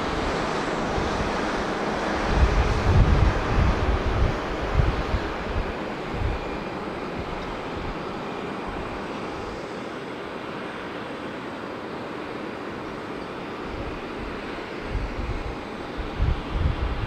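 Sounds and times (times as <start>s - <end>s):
wind buffeting microphone: 0.0s - 9.6s, 13.7s - 17.0s
jet engine rushing noise: 0.0s - 17.0s.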